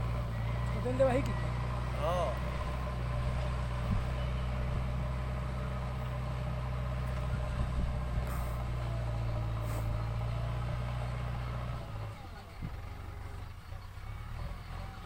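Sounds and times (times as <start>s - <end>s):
diesel engine running steadily: 0.0s - 15.0s
short hisses: 8.2s - 8.7s, 9.6s - 10.0s.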